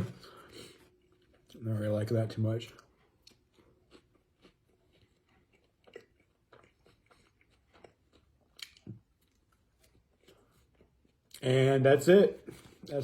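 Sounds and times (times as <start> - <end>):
person chewing food: 0.0 - 1.6, 2.7 - 11.4.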